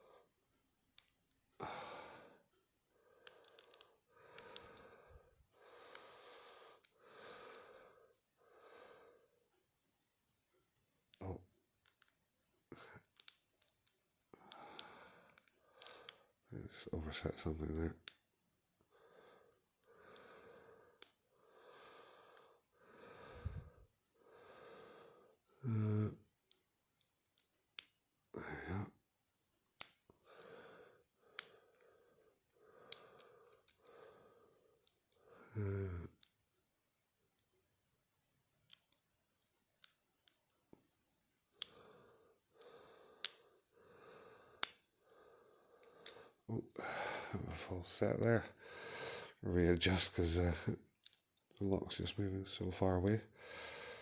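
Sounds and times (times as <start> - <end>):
person breathing heavily: 1.6 - 2.4, 3.0 - 9.3, 14.3 - 16.3, 18.9 - 26.2, 28.4 - 29.0, 30.2 - 36.2, 41.6 - 49.5, 53.3 - 54.0.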